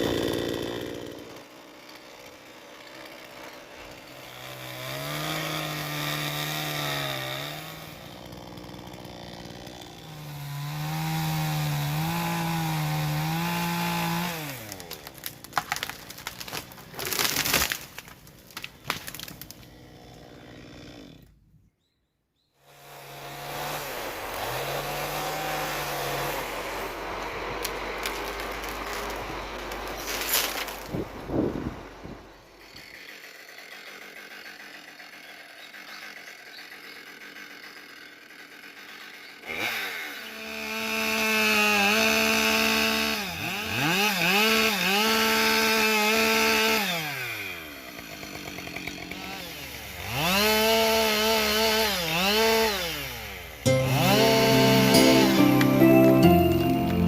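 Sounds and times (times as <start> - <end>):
chainsaw cutting wood: 0.0 - 21.4, 22.6 - 57.0
sharp knocks and cracks: 14.7 - 19.6.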